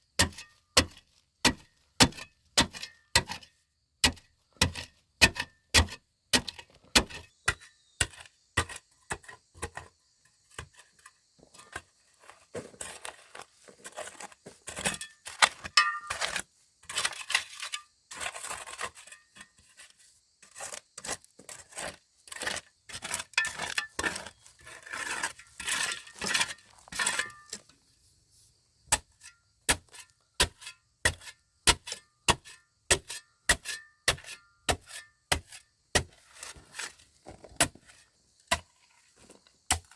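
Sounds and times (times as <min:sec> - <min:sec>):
scraping and clinking: 0:15.7 - 0:16.4.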